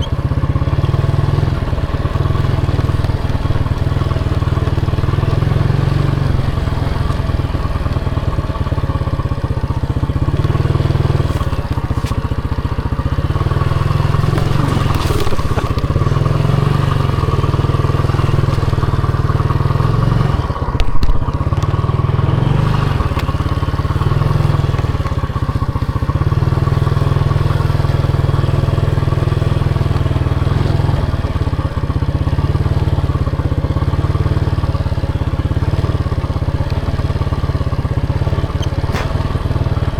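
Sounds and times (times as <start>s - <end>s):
motorcycle engine running: 0.0s - 39.9s
sharp loud knock: 38.9s - 39.8s.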